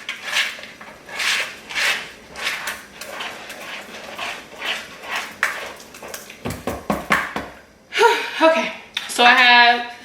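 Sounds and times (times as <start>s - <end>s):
spoon stirring batter in bowl: 0.0s - 6.6s.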